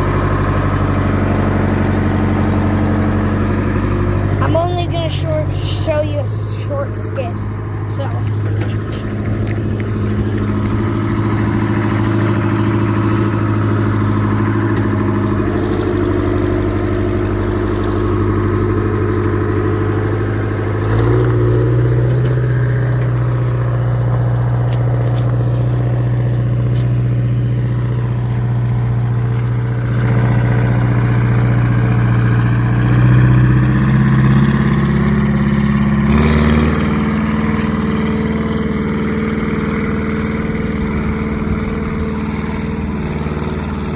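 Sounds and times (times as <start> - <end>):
tractor engine running: 0.0 - 43.9.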